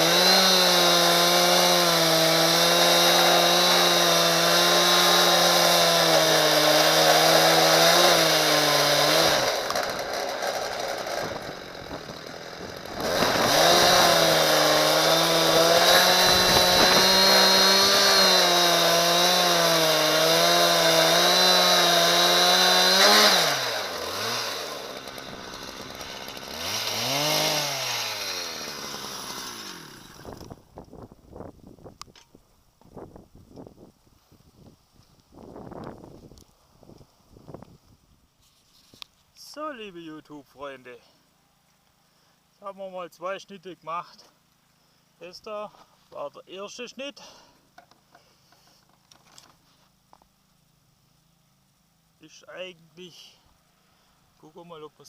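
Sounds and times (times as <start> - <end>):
chainsaw cutting log: 0.0 - 30.9.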